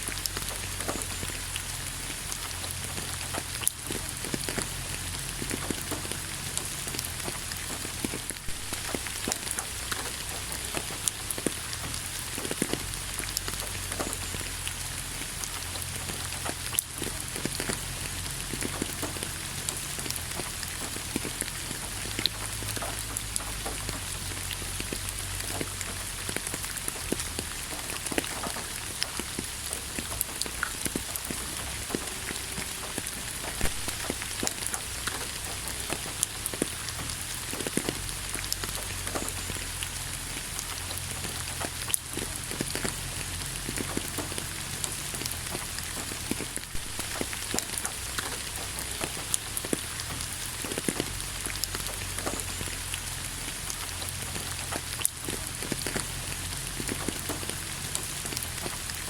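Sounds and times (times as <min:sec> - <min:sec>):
low steady rumble: 0:00.0 - 0:59.0
raindrops ticking: 0:00.0 - 0:59.0
steady rain hiss: 0:00.0 - 0:59.0.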